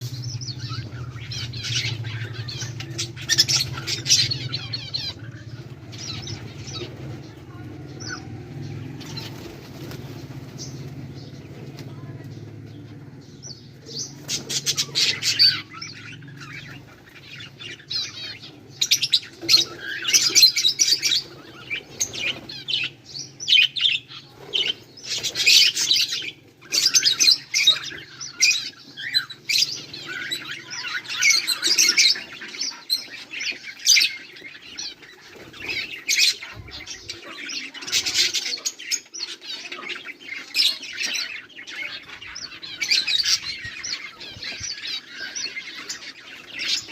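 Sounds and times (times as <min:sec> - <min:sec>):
bird squawks: 0:00.0 - 0:12.2, 0:13.4 - 0:46.9
budgerigars chirping: 0:00.0 - 0:46.9
wing flapping: 0:01.0 - 0:12.6.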